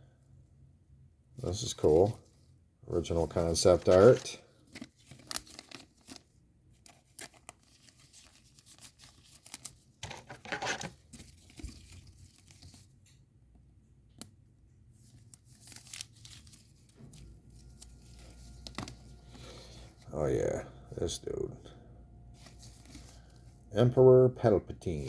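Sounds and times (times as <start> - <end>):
wrapper crinkling and tearing: 3.3 - 12.9, 15.1 - 19.8
cards clicking and scraping: 3.4 - 6.2, 6.9 - 12.8, 15.2 - 20.0.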